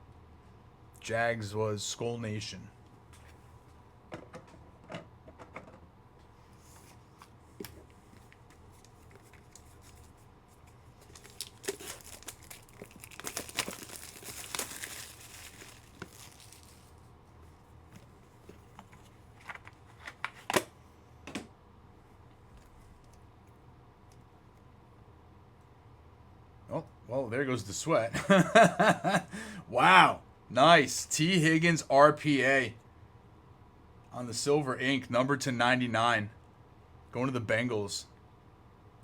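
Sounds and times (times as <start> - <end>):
wrapper tearing and crinkling: 11.0 - 17.0.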